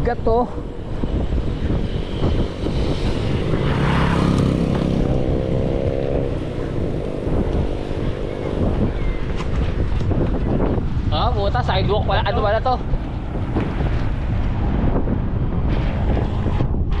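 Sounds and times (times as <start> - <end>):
wind buffeting the microphone: 0.0 - 17.0
vehicle engine droning past: 0.6 - 9.8.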